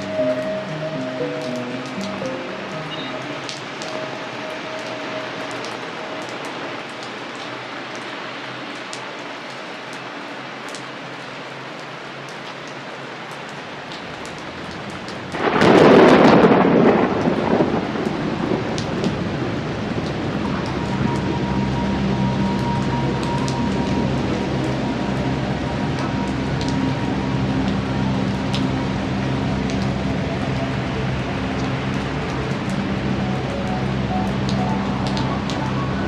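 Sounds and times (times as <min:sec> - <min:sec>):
raindrops ticking: 0:00.0 - 0:36.0
steady rain falling: 0:00.0 - 0:36.0
thunder clap rumbling: 0:15.0 - 0:36.0.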